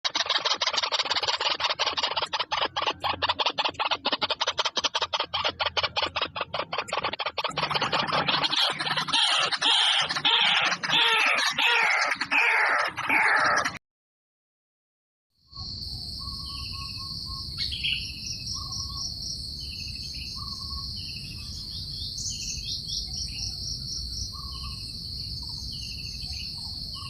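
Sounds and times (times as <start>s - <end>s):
birds calling harshly: 0.0s - 13.8s, 16.2s - 27.0s
falling bird calls: 0.0s - 13.8s.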